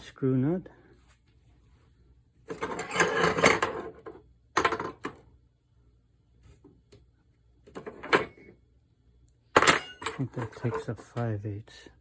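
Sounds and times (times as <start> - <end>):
metal tools clattering: 2.6 - 3.8, 9.6 - 11.0.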